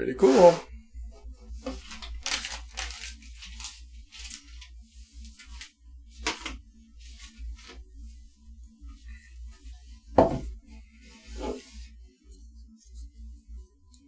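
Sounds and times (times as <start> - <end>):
steady low hum: 0.6 - 2.3
packaging rustling and scraping: 1.6 - 7.8.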